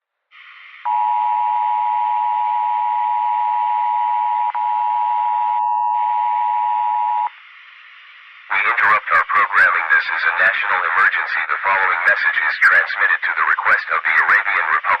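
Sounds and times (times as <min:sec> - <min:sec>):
static hiss: 0:00.4 - 0:00.9, 0:07.2 - 0:15.0.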